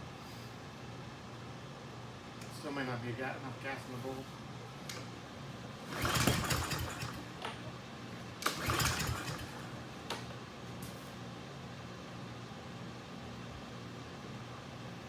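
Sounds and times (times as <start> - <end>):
lawn mower engine cranking: 5.9 - 7.3, 8.4 - 9.7.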